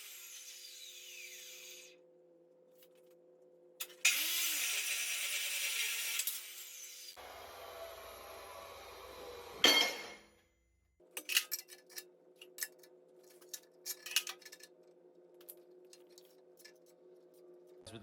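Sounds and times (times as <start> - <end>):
sharp metal clank: 9.6 - 10.2
steel pieces clinking: 11.2 - 14.8.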